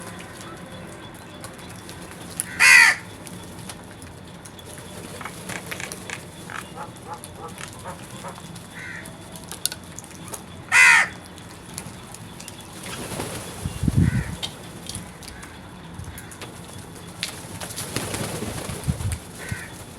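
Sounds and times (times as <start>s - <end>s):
birds chirping: 0.0s - 19.9s
crow cawing: 2.3s - 3.1s, 5.6s - 9.3s, 10.7s - 11.2s, 14.0s - 14.4s, 15.1s - 16.5s, 19.4s - 19.8s.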